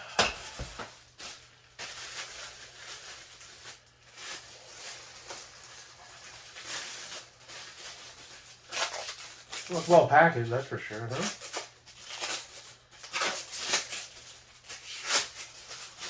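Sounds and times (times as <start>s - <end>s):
plastic packaging crinkling: 0.4s - 16.0s.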